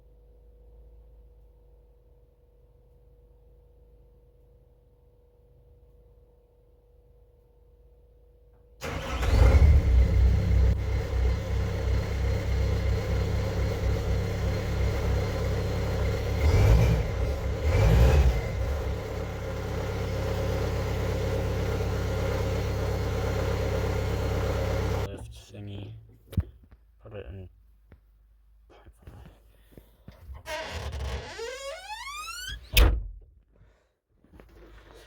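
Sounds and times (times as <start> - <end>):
diesel engine starting and idling: 8.8 - 25.4.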